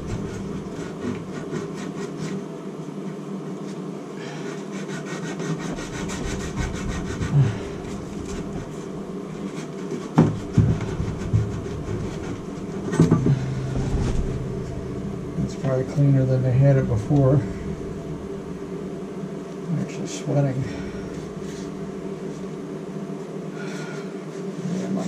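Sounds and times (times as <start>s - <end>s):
scrubbing copper pipe: 4.8s - 18.9s.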